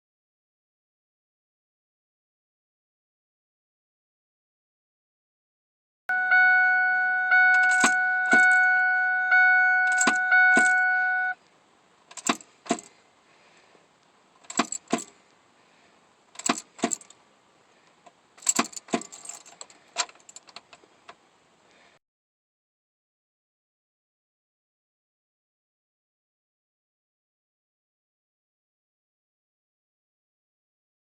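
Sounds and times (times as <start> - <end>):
warning chime dinging: 6.1 - 11.4
ignition key clicks: 7.4 - 8.7, 9.8 - 11.0
keys jangling: 7.5 - 8.6, 9.9 - 10.8, 12.1 - 12.9, 14.5 - 15.1, 16.4 - 17.1, 18.4 - 20.5.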